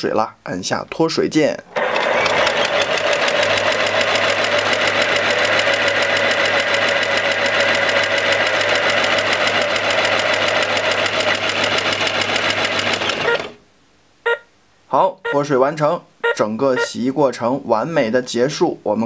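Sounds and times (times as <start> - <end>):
toy washing machine whirring: 1.7 - 13.6.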